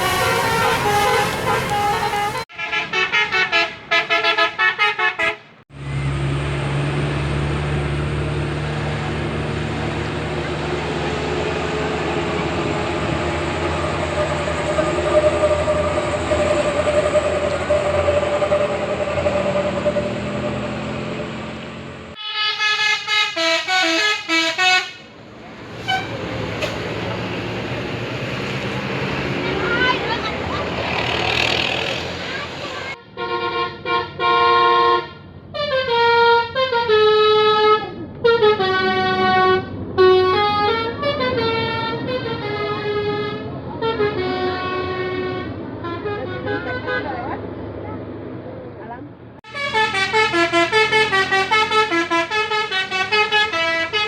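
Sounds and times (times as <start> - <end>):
bus musical horn tune: 0.0 - 5.6, 22.1 - 25.1, 25.8 - 26.8, 32.9 - 47.2, 49.4 - 54.0
large vehicle engine rumbling: 0.0 - 54.0.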